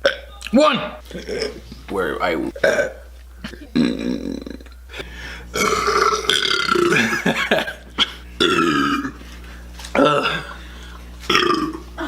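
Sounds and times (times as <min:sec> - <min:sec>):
man burping: 0:00.0 - 0:00.3, 0:01.1 - 0:01.6, 0:02.5 - 0:09.2, 0:09.9 - 0:12.0.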